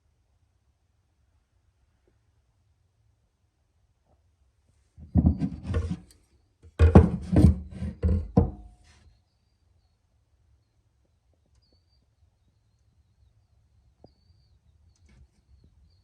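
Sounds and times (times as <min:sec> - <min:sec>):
objects knocking on hard surface: 0:05.0 - 0:06.0, 0:06.8 - 0:08.7.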